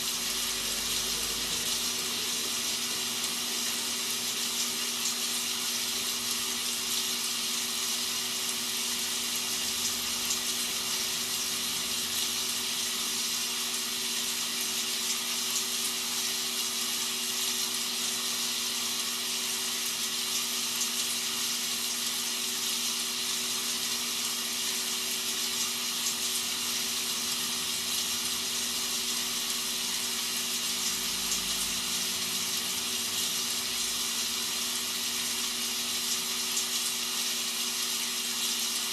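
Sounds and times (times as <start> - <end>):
rainfall hiss: 0.0 - 5.2, 26.2 - 36.7.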